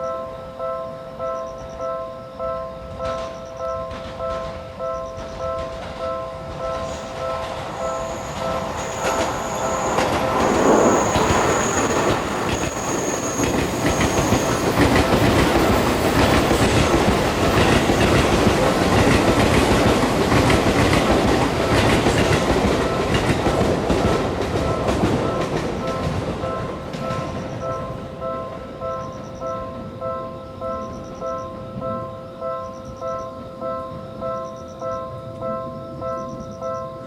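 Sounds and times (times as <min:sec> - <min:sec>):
level crossing warning bell: 0:00.0 - 0:20.0, 0:21.4 - 0:37.0
train rumble: 0:02.9 - 0:32.0
thin high whine: 0:06.8 - 0:15.1.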